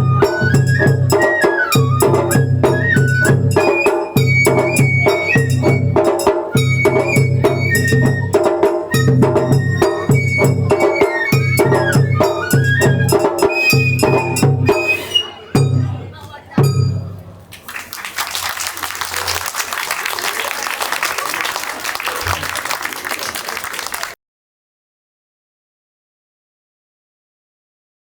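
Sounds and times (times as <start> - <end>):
bamboo flute melody: 0.0 - 16.0
rapid taiko drum strokes: 0.1 - 16.0, 16.6 - 17.2.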